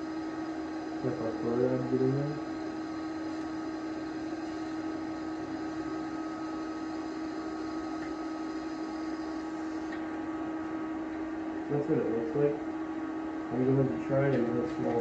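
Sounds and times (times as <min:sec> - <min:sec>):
welding arc hissing and humming: 0:00.0 - 0:11.2.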